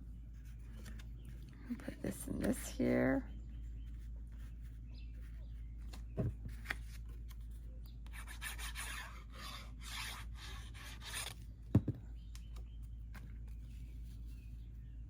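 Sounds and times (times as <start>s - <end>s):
scratchy paper rubbing: 6.5s - 11.4s.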